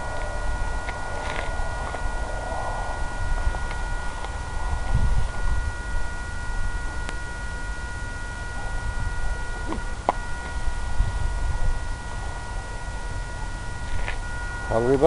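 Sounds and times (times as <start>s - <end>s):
high electronic whine: 0.0s - 15.0s
low rumble: 0.0s - 15.0s.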